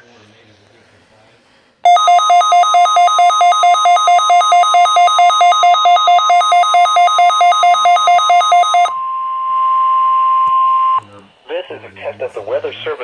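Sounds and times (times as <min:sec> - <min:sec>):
pulsing two-pitch beep: 0:01.9 - 0:11.0
steady alarm tone: 0:01.9 - 0:11.0.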